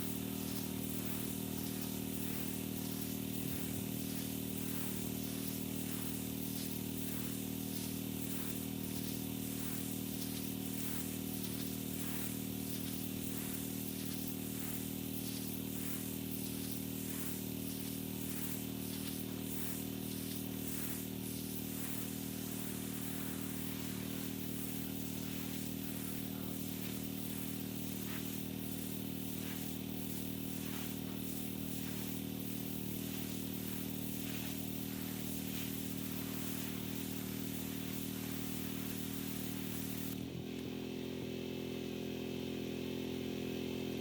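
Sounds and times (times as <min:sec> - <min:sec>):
high-pressure water spray hissing: 0:00.0 - 0:44.0
pressure washer engine running: 0:00.0 - 0:44.0.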